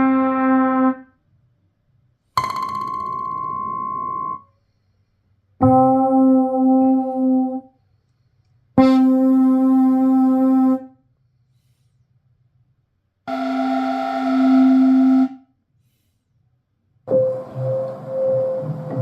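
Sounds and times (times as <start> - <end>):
held synth keyboard notes: 8.8 - 10.9, 13.3 - 15.4, 17.1 - 19.0.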